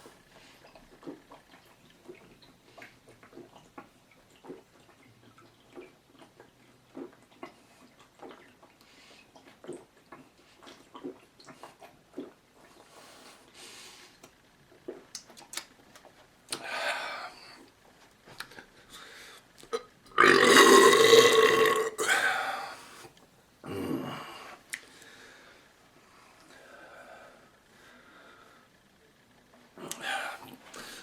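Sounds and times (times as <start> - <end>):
man belching: 19.7 - 22.2.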